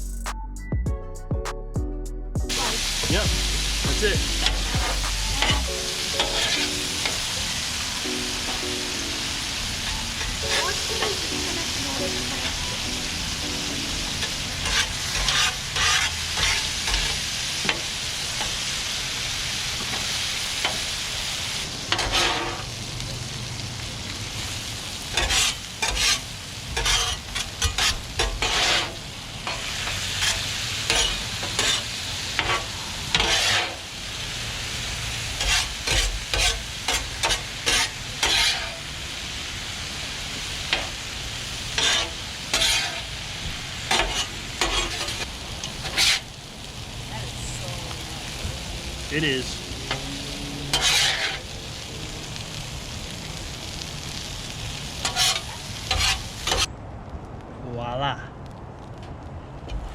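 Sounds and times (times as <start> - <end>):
food sizzling on a griddle: 2.4 - 56.8
utensil scraping a griddle: 6.2 - 7.2, 14.2 - 18.6, 21.9 - 22.7, 25.1 - 33.9, 35.3 - 38.9, 41.7 - 43.2, 43.9 - 46.4, 49.9 - 51.5, 55.0 - 56.7.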